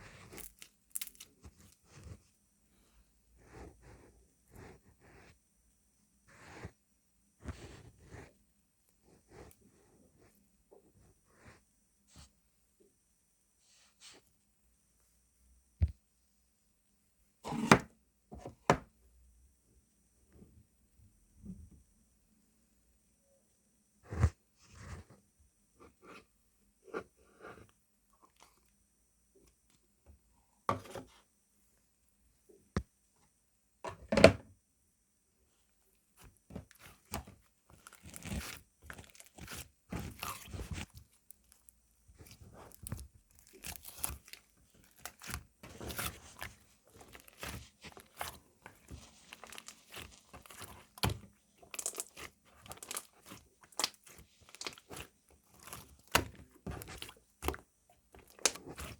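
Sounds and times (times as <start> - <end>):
slime squishing and crackling: 0.1 - 2.0, 36.2 - 58.9.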